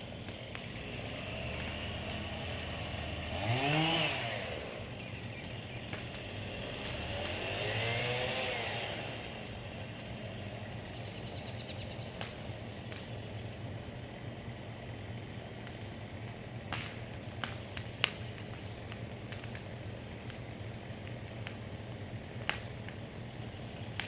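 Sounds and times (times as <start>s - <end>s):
chainsaw idling and revving: 0.0s - 13.3s.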